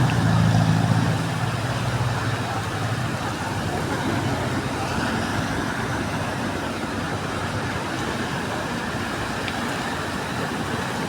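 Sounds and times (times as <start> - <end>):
vehicle engines running: 0.0 - 8.6.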